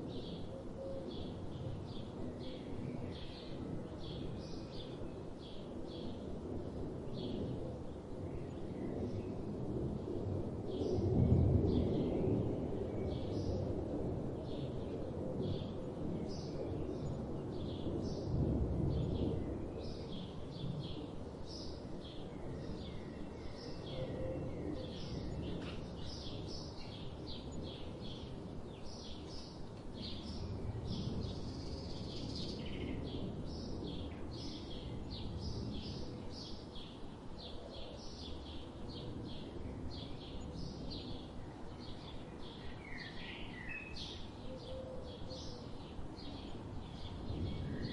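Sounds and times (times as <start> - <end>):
songbirds chirping and singing: 19.0 - 47.9.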